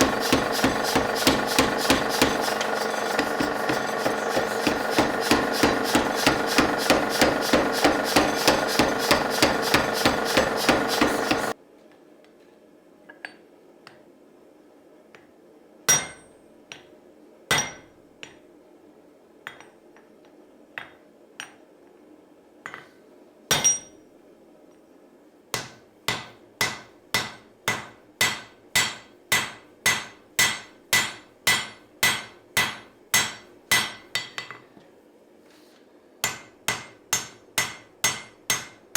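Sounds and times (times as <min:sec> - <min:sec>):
hammer blows on anvil: 0:00.0 - 0:11.6
loud steady noise: 0:00.0 - 0:11.6.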